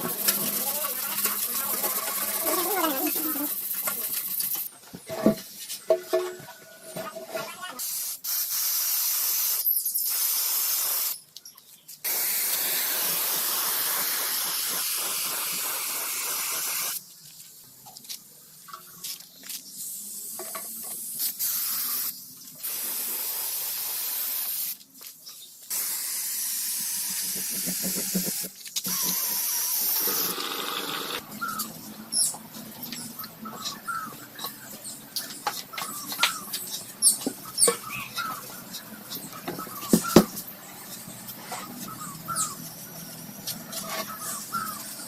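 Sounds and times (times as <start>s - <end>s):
compressed air hissing in bursts: 0.0s - 4.7s, 7.8s - 11.2s, 12.0s - 17.0s, 19.8s - 24.8s, 25.7s - 31.2s.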